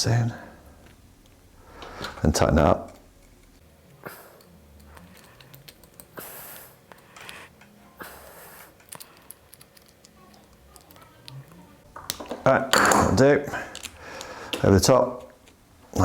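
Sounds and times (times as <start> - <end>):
short breaths: 13.5 - 14.6.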